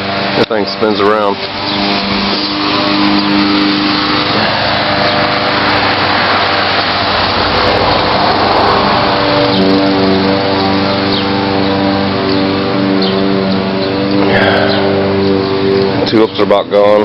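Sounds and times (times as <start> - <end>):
small engine humming: 0.0 - 17.0
thick noise: 14.1 - 16.0.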